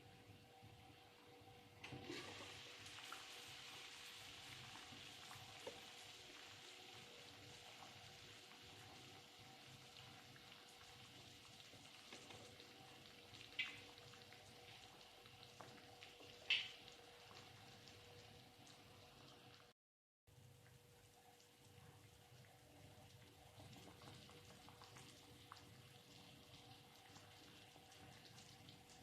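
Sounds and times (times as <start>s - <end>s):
pan sizzling: 1.9s - 17.9s.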